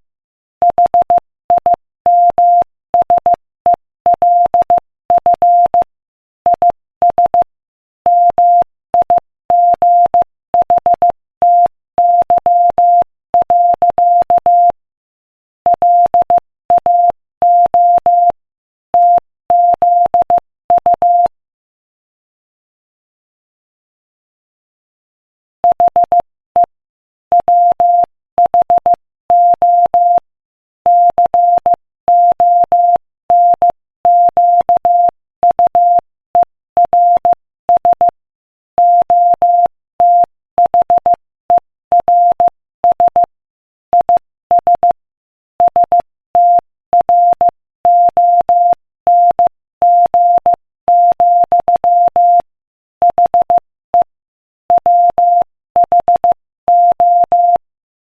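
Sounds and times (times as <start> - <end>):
morse code beeps: 8.1 - 14.8, 15.7 - 18.4, 19.0 - 21.3, 25.6 - 26.7, 27.3 - 30.2, 30.9 - 38.2, 38.8 - 43.3, 43.9 - 45.0, 45.6 - 54.1, 54.7 - 57.6.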